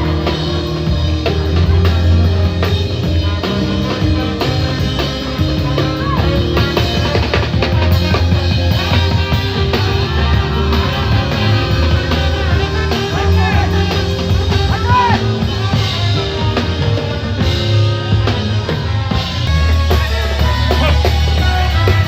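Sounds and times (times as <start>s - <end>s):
loud music with drums and bass: 0.0s - 22.0s.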